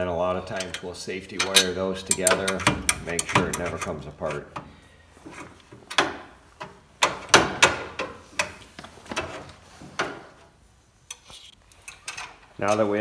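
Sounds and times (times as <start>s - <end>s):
sharp metal clanks and knocks: 0.5s - 4.0s.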